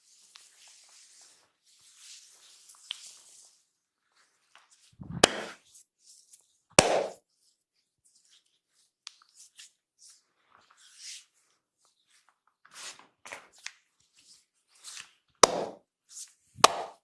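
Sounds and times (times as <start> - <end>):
sharp percussive hand hits: 16.6 - 17.0.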